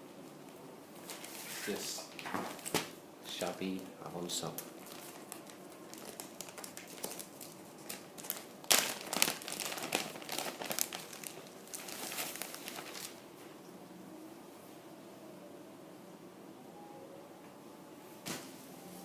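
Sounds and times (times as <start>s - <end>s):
plastic bag crinkling: 4.2s - 13.2s.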